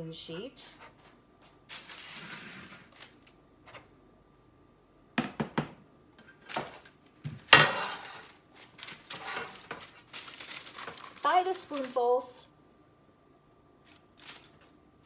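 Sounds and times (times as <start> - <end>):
parchment paper rustling: 0.7 - 3.4, 6.3 - 12.4, 13.8 - 14.8.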